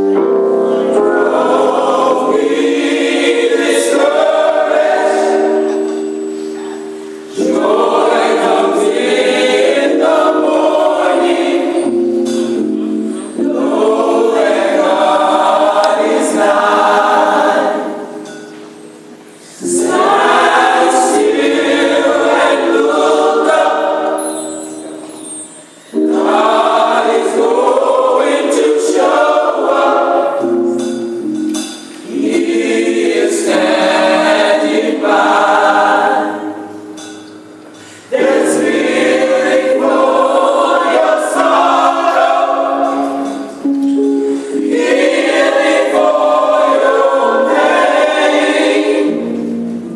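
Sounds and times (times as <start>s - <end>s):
gospel choir singing: 0.0s - 49.9s.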